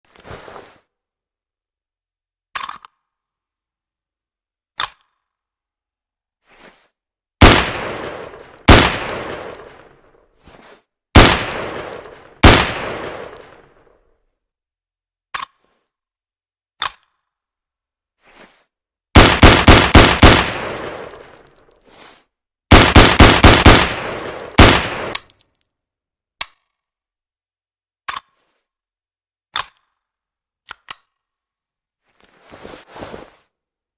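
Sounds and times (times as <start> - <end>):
rifle shots echoing: 7.4 - 9.9, 11.2 - 13.4, 19.2 - 21.4, 22.7 - 25.3.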